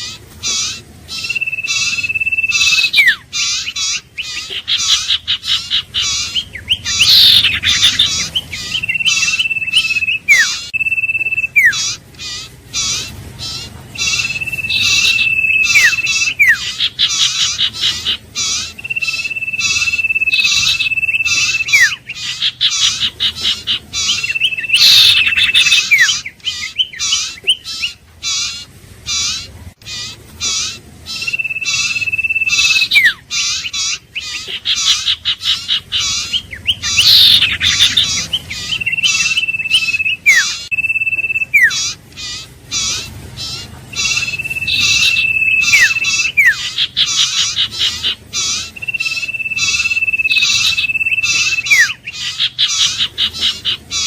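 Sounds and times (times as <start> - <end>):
sharp bird chirping: 0.0 - 54.0
bird whistles with downward slur: 8.8 - 11.8, 18.8 - 22.0, 38.8 - 41.8, 44.0 - 46.6, 48.8 - 52.0.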